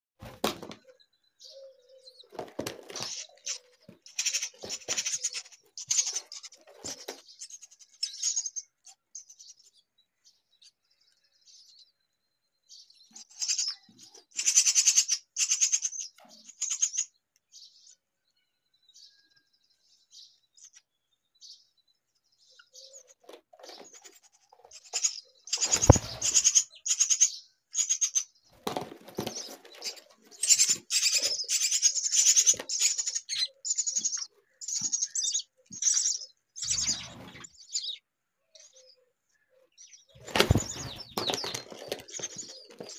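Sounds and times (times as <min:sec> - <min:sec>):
bird chicks calling: 0:00.2 - 0:12.0, 0:12.7 - 0:18.0, 0:18.9 - 0:42.9.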